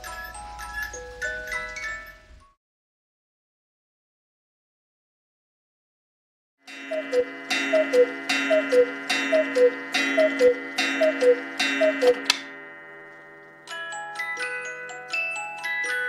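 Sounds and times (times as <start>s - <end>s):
tinkling music-box tune: 0.0s - 2.6s, 6.7s - 16.0s
gong strike ringing: 6.7s - 13.5s
cuckoo clock call: 6.7s - 16.0s.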